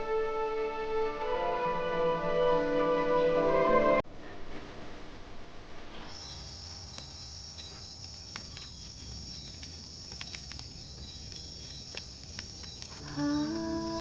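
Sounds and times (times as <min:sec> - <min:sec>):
insects chirring: 0:06.0 - 0:14.0
faint clicks: 0:06.3 - 0:14.0.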